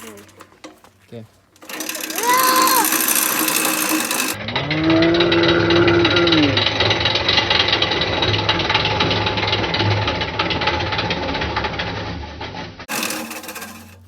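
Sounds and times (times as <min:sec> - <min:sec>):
push reel mower blades clattering: 0:00.0 - 0:14.0
drawn-out voice: 0:01.8 - 0:03.3.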